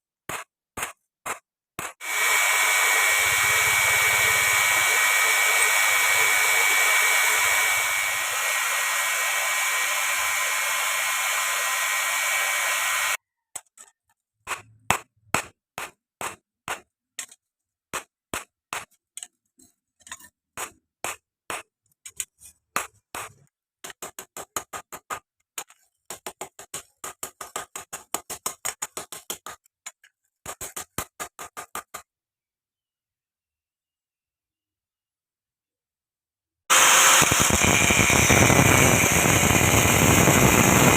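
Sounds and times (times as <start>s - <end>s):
motor whirring: 2.0s - 13.2s, 36.7s - 40.9s.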